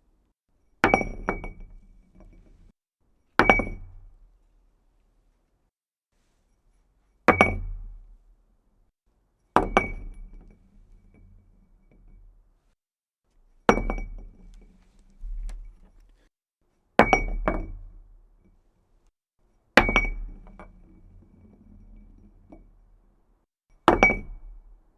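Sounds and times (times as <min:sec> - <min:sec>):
glass dropping on hard floor: 0:13.6 - 0:16.1, 0:17.0 - 0:17.9, 0:19.8 - 0:20.8, 0:23.8 - 0:24.5
glass rolling: 0:19.8 - 0:22.8.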